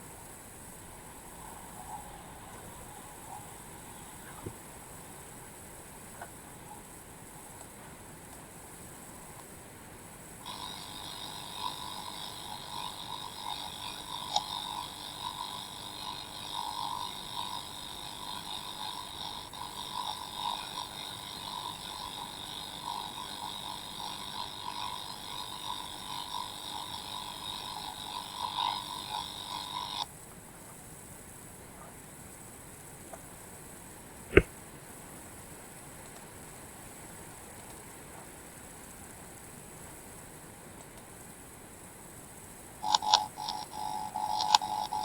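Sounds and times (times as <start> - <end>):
steady high hiss: 0.0 - 18.8
scratchy flickering audio noise: 42.8 - 45.0.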